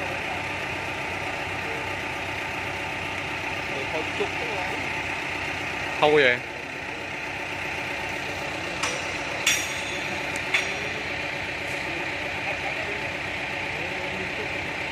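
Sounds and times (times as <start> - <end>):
bulldozer diesel engine running: 0.0 - 14.9
sharp metallic clinks: 8.6 - 12.0.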